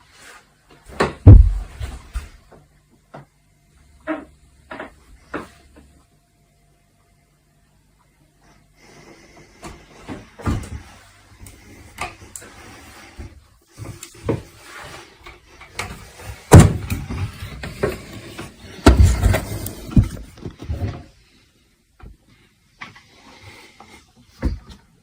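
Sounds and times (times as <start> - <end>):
wooden thumps and knocks: 1.0 - 2.2.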